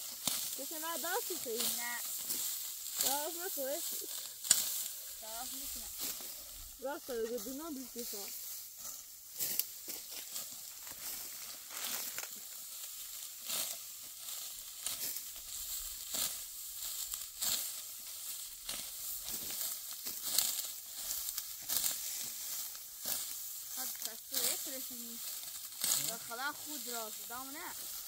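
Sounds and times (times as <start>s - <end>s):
dry wheat stalks crunching: 0.0s - 28.0s.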